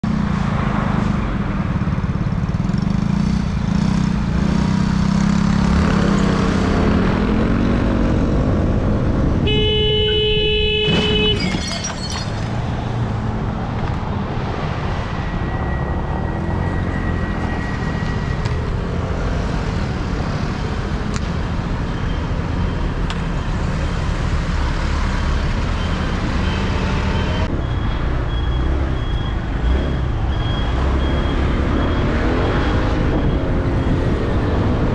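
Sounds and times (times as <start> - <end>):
road noise: 0.0 - 34.9
vehicle engine: 0.0 - 34.9
car horn: 9.4 - 11.7.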